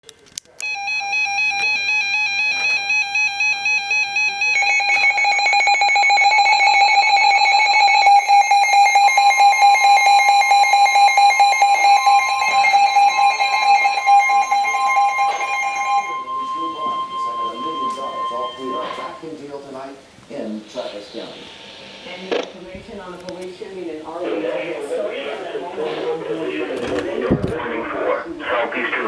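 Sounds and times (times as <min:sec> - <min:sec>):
rapidly pulsing alarm tone: 0:00.6 - 0:19.3, 0:20.5 - 0:23.1
warbling beeping alert tone: 0:00.6 - 0:19.3, 0:20.6 - 0:22.7.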